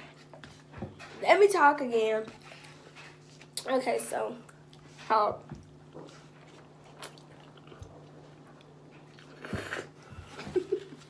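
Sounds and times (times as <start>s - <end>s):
person chewing food: 4.5s - 11.0s.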